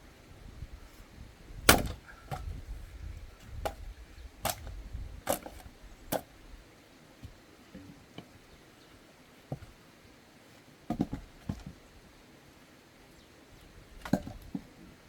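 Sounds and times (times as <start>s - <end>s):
axe striking a log: 1.7s - 2.1s.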